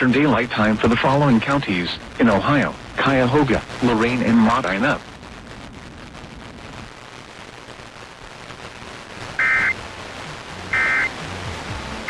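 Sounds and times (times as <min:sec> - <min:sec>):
broadcast static hiss: 0:00.0 - 0:12.0
two-tone digital bursts: 0:09.4 - 0:09.8, 0:10.7 - 0:11.1.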